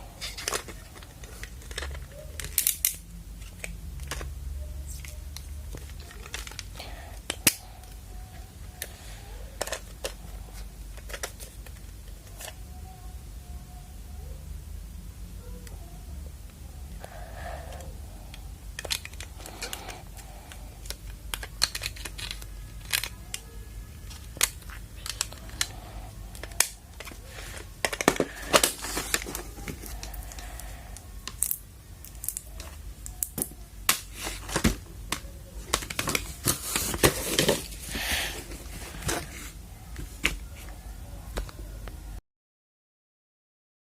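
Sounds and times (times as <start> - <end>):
wrapping crinkling and tearing: 18.8 - 23.2, 24.1 - 39.6.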